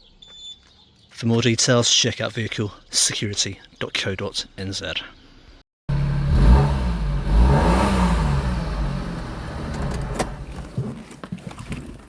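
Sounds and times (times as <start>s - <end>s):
car engine starting and revving: 5.9s - 10.9s.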